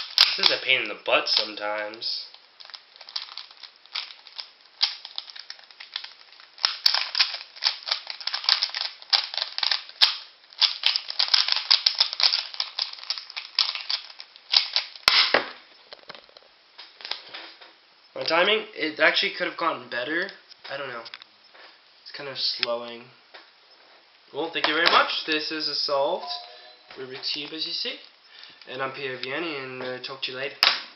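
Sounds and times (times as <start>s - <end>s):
plastic puzzle cube clicking: 2.6s - 15.0s.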